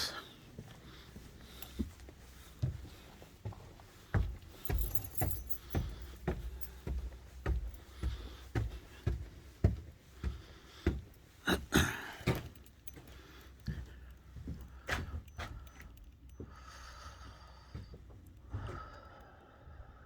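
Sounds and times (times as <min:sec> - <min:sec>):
footsteps climbing stairs: 0:00.6 - 0:16.6
rustling clatter: 0:04.4 - 0:06.9.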